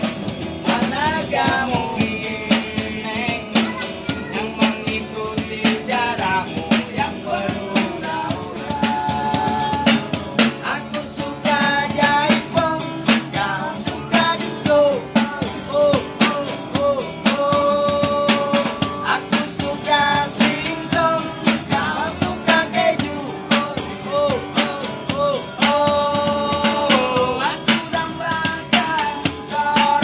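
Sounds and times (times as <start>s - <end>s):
music with steady drum beat: 0.0s - 30.0s
person singing with bending notes: 0.0s - 30.0s.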